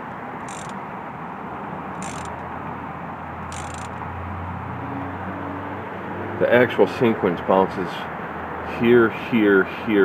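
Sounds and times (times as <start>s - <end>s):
ratchet wrench clicking: 0.4s - 0.8s, 1.9s - 2.5s, 3.4s - 4.0s.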